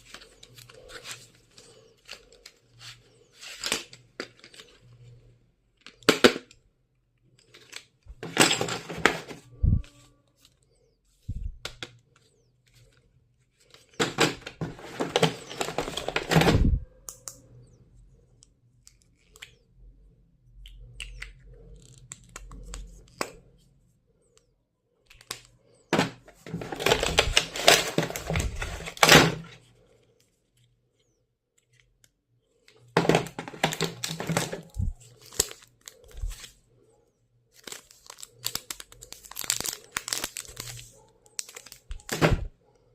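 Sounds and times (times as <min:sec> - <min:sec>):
packaging rustling and tearing: 0:13.6 - 0:16.7, 0:25.2 - 0:29.6, 0:33.0 - 0:36.6, 0:37.5 - 0:42.5.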